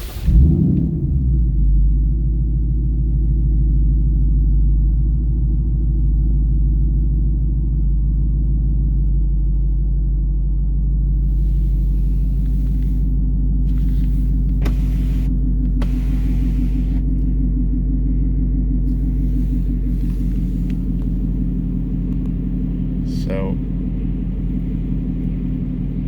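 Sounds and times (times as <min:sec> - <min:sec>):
hiss: 0:00.0 - 0:00.3, 0:11.2 - 0:13.1, 0:13.7 - 0:17.0
car engine idling: 0:00.0 - 0:26.0.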